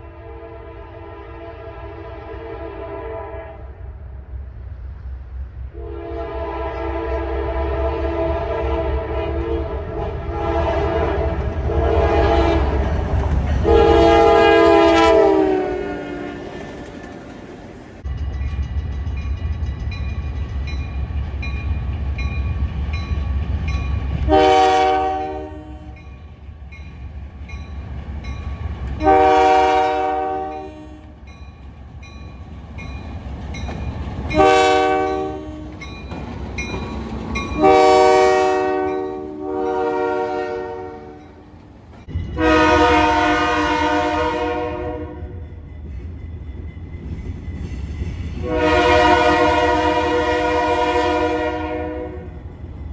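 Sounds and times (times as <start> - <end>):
locomotive air horn blasts: 0.0 - 3.8, 5.7 - 13.0, 13.6 - 16.9, 24.3 - 26.0, 29.0 - 31.2, 34.3 - 35.8, 37.5 - 41.3, 42.4 - 45.3, 48.4 - 52.3.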